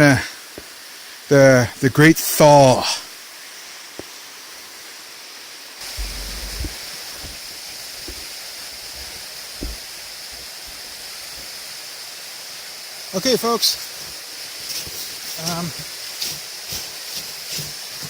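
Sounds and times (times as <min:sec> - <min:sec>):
waterfall rushing under ice: 0:00.0 - 0:18.0
soft low thumps: 0:05.8 - 0:07.4, 0:09.6 - 0:09.9.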